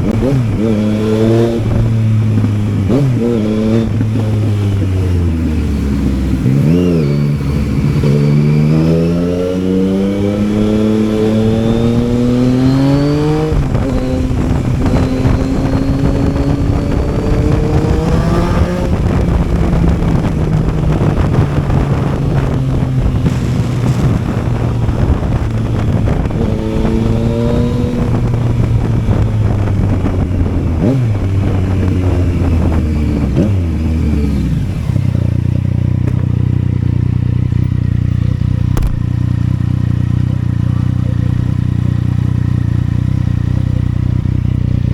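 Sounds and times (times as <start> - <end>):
wind noise: 0.0 - 35.4, 37.9 - 39.7
motorcycle engine revving: 0.0 - 44.9.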